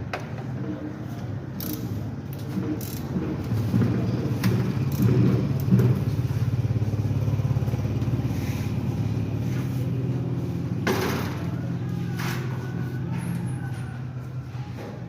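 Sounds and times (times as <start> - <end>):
motorcycle engine idling: 4.7 - 12.1.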